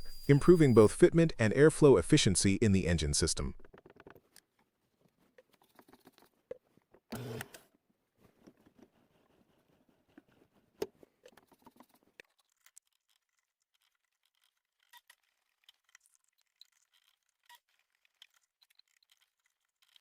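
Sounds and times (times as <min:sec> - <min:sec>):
faint clicks and scratches: 0:03.6 - 0:07.6, 0:08.2 - 0:20.0.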